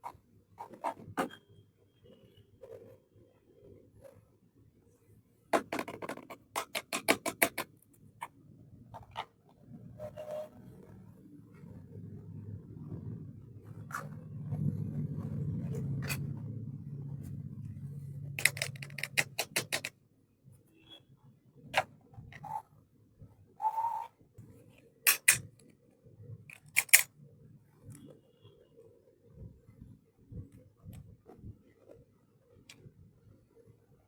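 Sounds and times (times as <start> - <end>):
plastic toy pieces rubbing: 0.0 - 1.4, 5.6 - 10.5, 15.2 - 16.4, 18.4 - 20.0, 25.0 - 25.5, 26.5 - 27.1
plastic toy pieces clicking: 5.8 - 7.7, 18.4 - 19.9, 25.1 - 25.5, 26.5 - 27.1.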